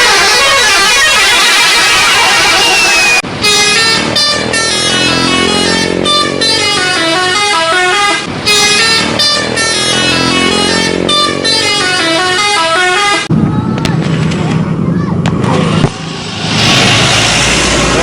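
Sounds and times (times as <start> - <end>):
multi-tone musical bus horn: 0.0 - 13.3
loud noisy rush: 13.3 - 18.0.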